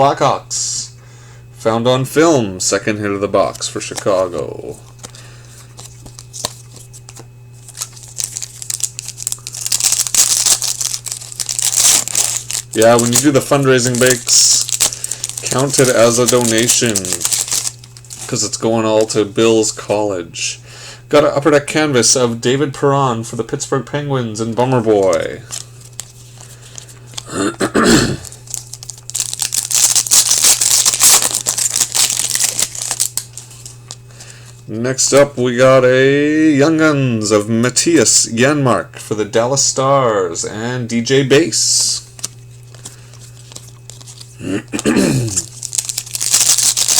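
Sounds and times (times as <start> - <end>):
low electrical hum: 0.0 - 46.9
cards clicking and flicking: 3.4 - 19.2, 28.3 - 34.5
wrapper crinkling and tearing: 3.5 - 19.2, 24.9 - 27.4, 28.0 - 34.0, 42.2 - 46.9.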